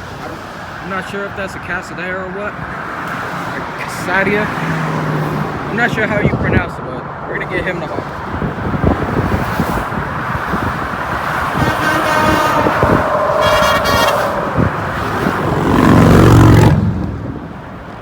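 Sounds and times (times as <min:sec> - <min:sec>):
road noise: 0:00.0 - 0:18.0
truck horn blasts: 0:11.3 - 0:16.9
loud low air horn blast: 0:11.3 - 0:17.2.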